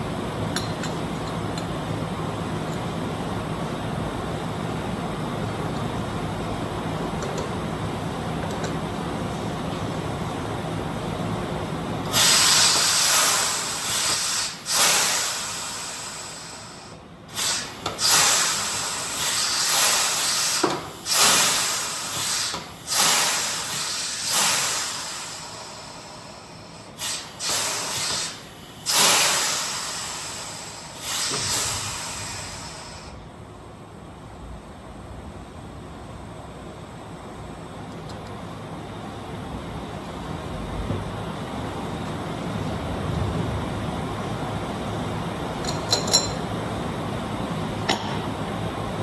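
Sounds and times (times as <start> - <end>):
pressurised air hissing bursts: 12.1 - 33.2.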